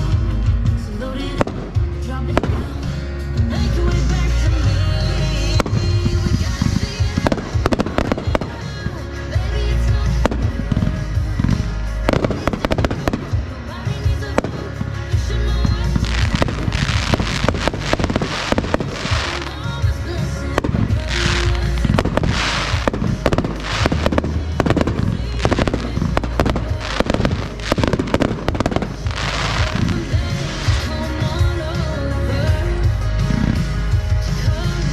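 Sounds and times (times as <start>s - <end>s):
background music: 0.0s - 34.9s
fireworks bangs: 1.3s - 3.0s, 5.0s - 31.9s
fireworks hissing crackle: 5.0s - 32.3s.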